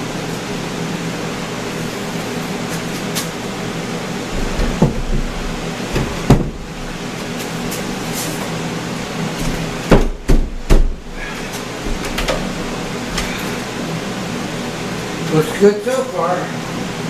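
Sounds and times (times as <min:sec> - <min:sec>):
steady hum: 0:00.0 - 0:17.0
wooden shelf knocks: 0:04.4 - 0:06.7, 0:09.9 - 0:11.0.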